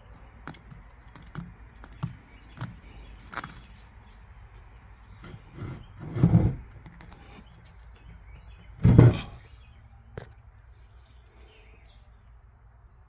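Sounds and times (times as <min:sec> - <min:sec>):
heavy dull thuds: 0:08.8 - 0:09.4.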